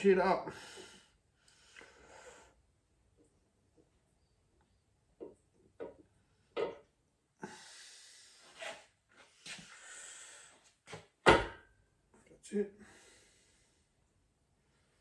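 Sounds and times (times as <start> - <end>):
knocks and handling noise: 5.2 - 6.9.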